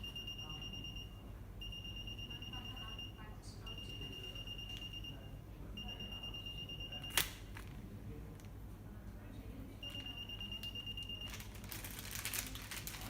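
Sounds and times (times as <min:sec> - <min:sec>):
anti-theft gate alarm beep: 0:00.0 - 0:07.2, 0:09.8 - 0:11.4.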